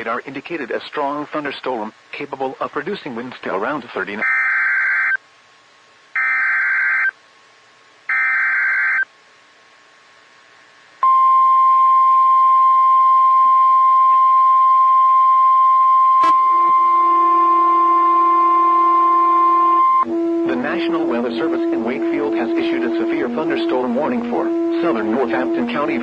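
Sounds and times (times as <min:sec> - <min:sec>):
screeching digital data bursts: 0:06.2 - 0:07.1, 0:08.1 - 0:09.0
steady high alert tone: 0:06.2 - 0:07.1, 0:08.1 - 0:09.0, 0:16.1 - 0:26.0
lower second tone: 0:11.0 - 0:26.0.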